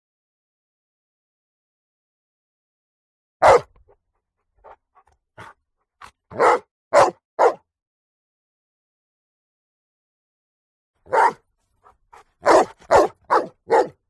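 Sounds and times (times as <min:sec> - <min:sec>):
dog barking: 0:03.4 - 0:04.0, 0:05.4 - 0:07.6, 0:11.1 - 0:14.0.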